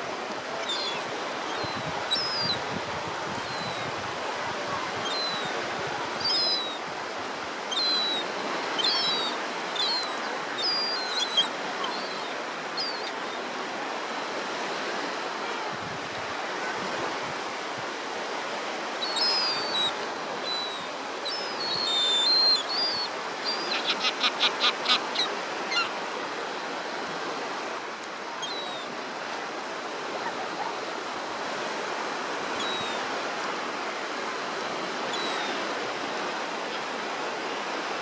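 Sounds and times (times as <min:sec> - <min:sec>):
sea surf: 0:00.0 - 0:38.0
gulls calling: 0:00.4 - 0:02.7, 0:07.6 - 0:13.6, 0:19.0 - 0:26.0.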